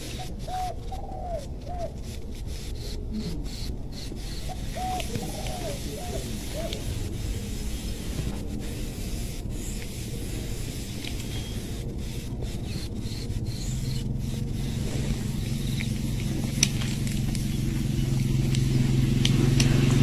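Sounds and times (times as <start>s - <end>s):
dove cooing: 0.0s - 8.8s
steady background noise: 0.0s - 20.0s.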